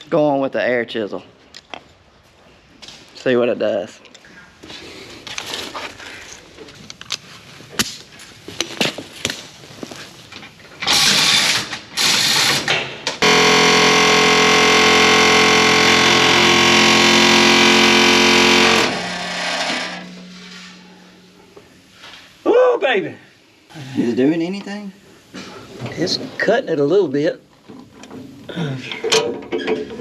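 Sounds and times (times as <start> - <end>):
air chisel hammering on steel: 13.2 - 20.9.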